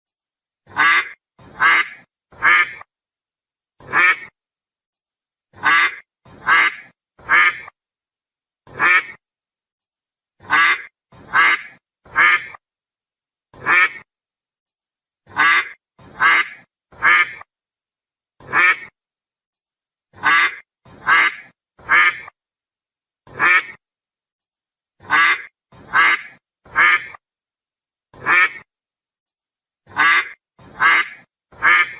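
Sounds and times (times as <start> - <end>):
duck quacking: 0.7 - 2.9, 3.8 - 4.3, 5.5 - 7.8, 8.7 - 9.2, 10.4 - 12.6, 13.6 - 14.1, 15.3 - 17.5, 18.4 - 19.0, 20.1 - 22.4, 23.3 - 23.8, 25.0 - 27.2, 28.2 - 28.7, 29.9 - 31.9.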